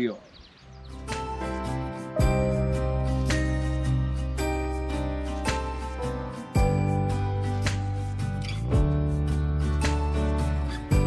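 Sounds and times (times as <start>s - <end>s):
bell-like notes: 2.1s - 8.8s.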